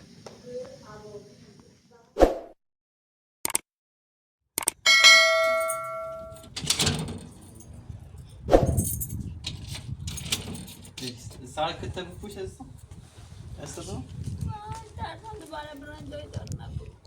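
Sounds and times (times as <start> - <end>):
bell-like ding: 4.9 - 6.4.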